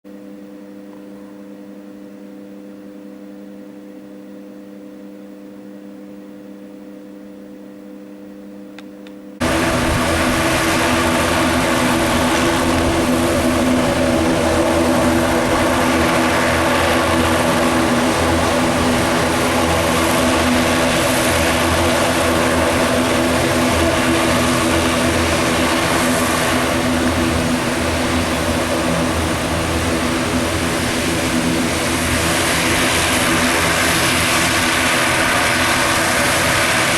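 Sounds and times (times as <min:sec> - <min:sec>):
turboprop engines running: 0:09.4 - 0:36.9.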